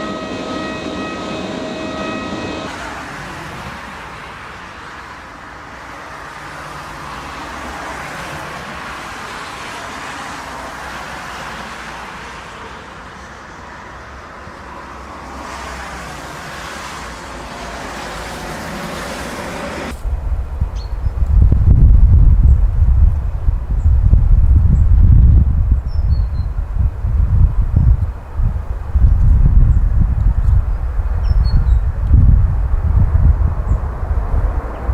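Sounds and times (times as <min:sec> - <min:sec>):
jet engines rushing: 0:00.0 - 0:12.4, 0:14.2 - 0:25.8.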